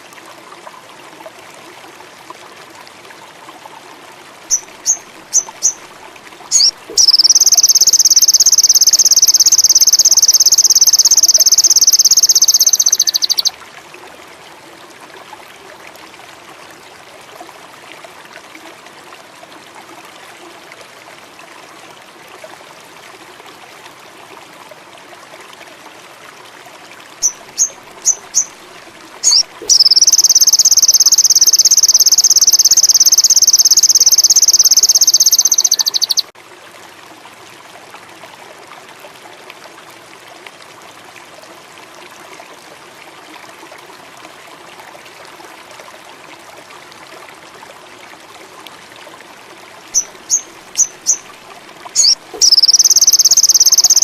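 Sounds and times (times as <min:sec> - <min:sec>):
running water: 0:00.0 - 0:54.0
bird chirping and trilling: 0:04.5 - 0:05.8, 0:06.5 - 0:13.5, 0:27.2 - 0:28.5, 0:29.2 - 0:36.3, 0:50.0 - 0:51.3, 0:52.0 - 0:54.0
insects chirring: 0:06.5 - 0:13.5, 0:29.2 - 0:36.2, 0:52.0 - 0:54.0.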